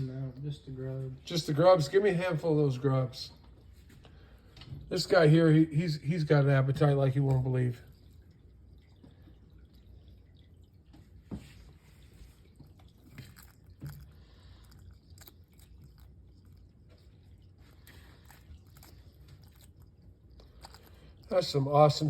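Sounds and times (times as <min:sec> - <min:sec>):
lizard jaws chewing and clicking: 0:12.4 - 0:22.0.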